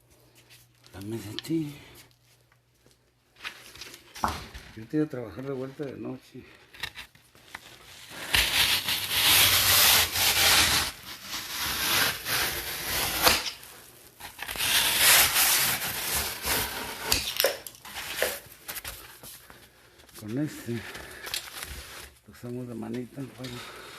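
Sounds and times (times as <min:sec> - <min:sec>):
tool rasping against hard material: 0:08.1 - 0:13.6, 0:14.2 - 0:18.4.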